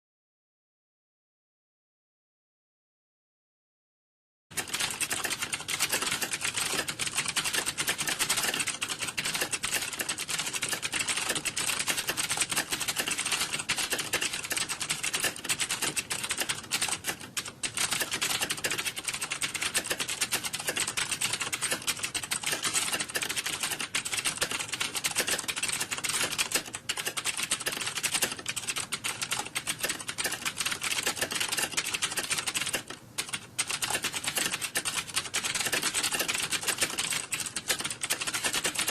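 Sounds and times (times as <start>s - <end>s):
typing on computer keyboard: 4.5s - 38.9s.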